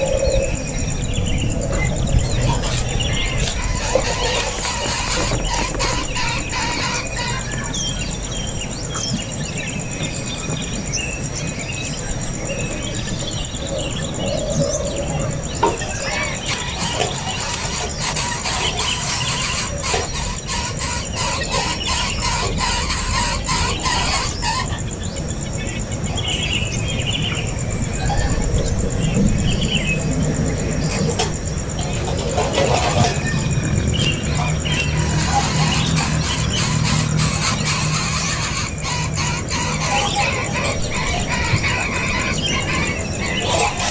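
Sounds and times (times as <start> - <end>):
nestling birds squealing and chirping: 0.0 - 43.9
steady high buzz: 0.0 - 43.9.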